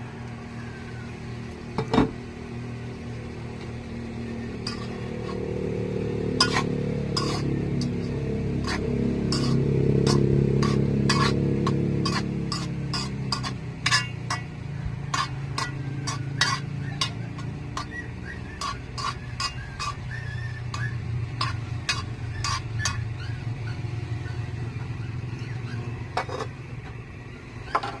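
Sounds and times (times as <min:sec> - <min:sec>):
steady low hum: 0:00.0 - 0:28.0
metal utensil clinking in pot: 0:04.6 - 0:05.4, 0:06.4 - 0:23.1.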